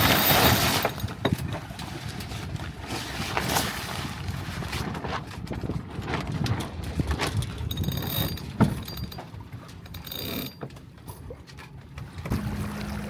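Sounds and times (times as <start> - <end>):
sailboat hardware clicks and squeaks: 0.0 - 2.4, 6.5 - 12.1.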